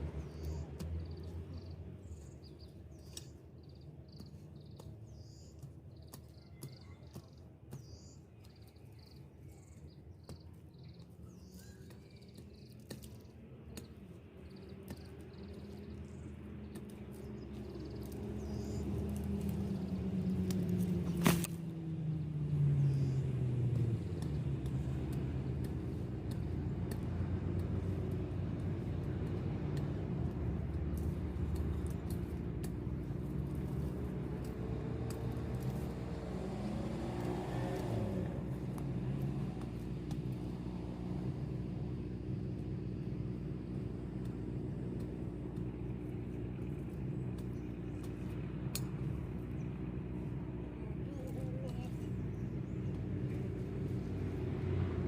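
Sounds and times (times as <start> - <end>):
engine rumble: 0.0 - 55.0.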